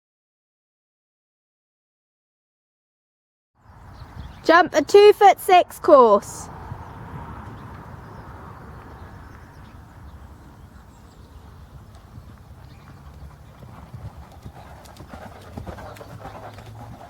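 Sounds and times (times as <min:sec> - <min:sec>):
horse hoofbeats on ground: 0:08.7 - 0:17.0.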